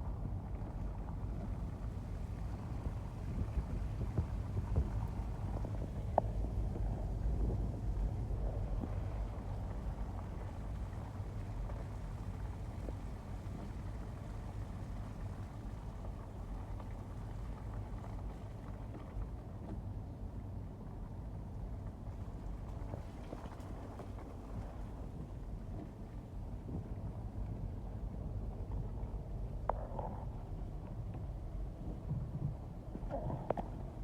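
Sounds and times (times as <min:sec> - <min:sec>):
wind buffeting microphone: 0:00.0 - 0:18.5.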